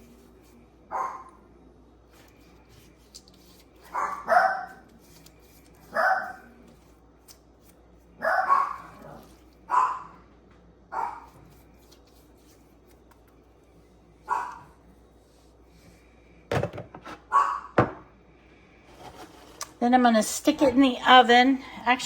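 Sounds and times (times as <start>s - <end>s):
dog barking indoors: 0.9s - 1.5s, 3.8s - 5.0s, 5.8s - 6.7s, 8.1s - 10.3s, 10.9s - 11.5s, 14.2s - 14.8s, 17.2s - 18.0s.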